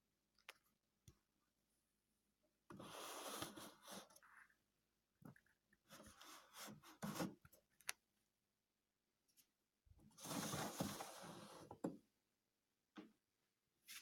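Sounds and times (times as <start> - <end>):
rubbing and scraping: 10.2 - 11.7.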